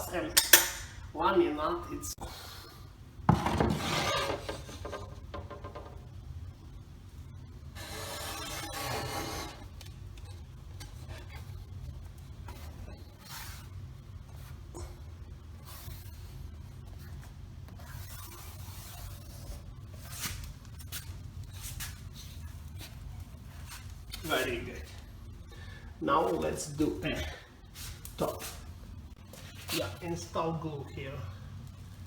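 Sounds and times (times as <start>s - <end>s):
steady low hum: 0.0s - 32.0s
hand scraping on laminate: 3.3s - 6.0s, 7.8s - 9.7s.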